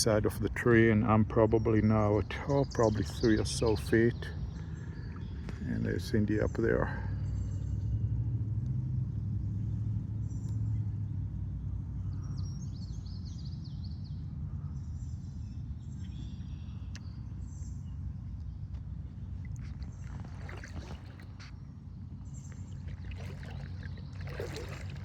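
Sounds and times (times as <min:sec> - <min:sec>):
water sloshing around legs: 0:19.1 - 0:25.0
water splashes: 0:19.4 - 0:21.6, 0:22.2 - 0:25.0.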